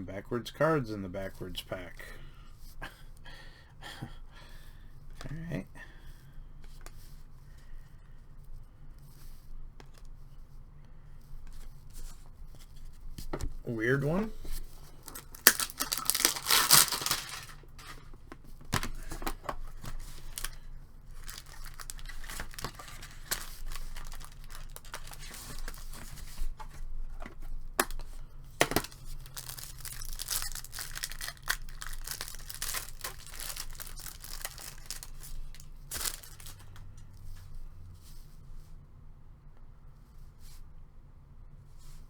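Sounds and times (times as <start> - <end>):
cards being handled: 11.4 - 37.4
wrapper tearing and crinkling: 14.9 - 18.1, 18.8 - 26.2, 28.6 - 36.8.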